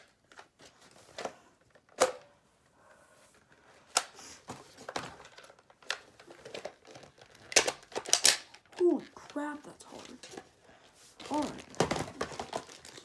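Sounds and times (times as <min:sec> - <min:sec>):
plastic toy blaster clicks: 0:07.4 - 0:08.9.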